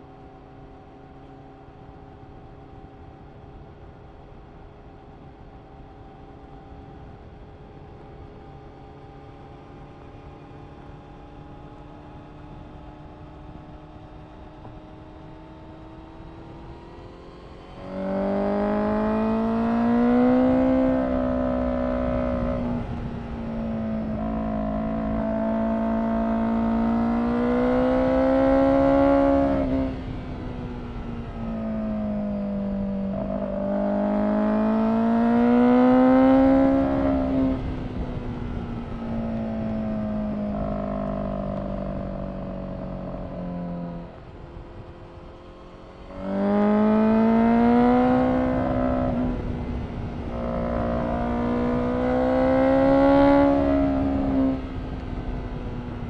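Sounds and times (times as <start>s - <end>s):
motorcycle engine revving: 14.6s - 56.0s.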